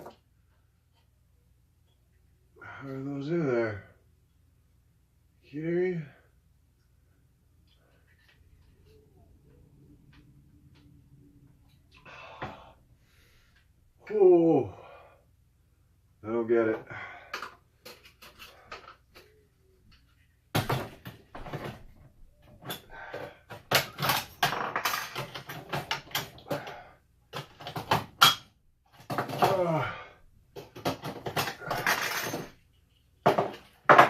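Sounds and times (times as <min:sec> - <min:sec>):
metal parts knocking and scraping: 0:23.5 - 0:26.8, 0:30.6 - 0:32.6.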